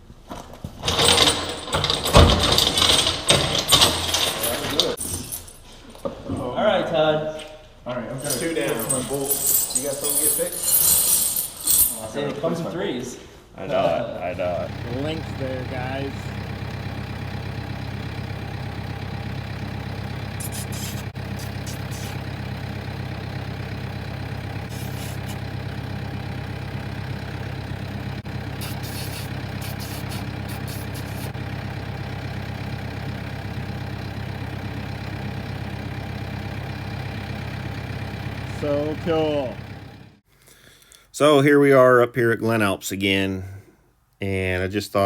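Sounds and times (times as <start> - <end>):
vehicle engine idling: 14.2 - 40.2
brief bursts of hiss: 28.6 - 31.3.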